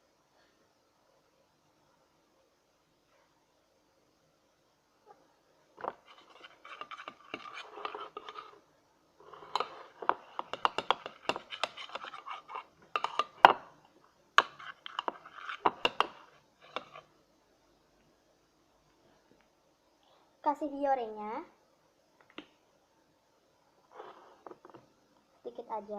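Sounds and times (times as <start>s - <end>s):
utensil scraping sticky slime in bowl: 5.8s - 8.6s, 9.2s - 13.8s, 14.4s - 17.1s.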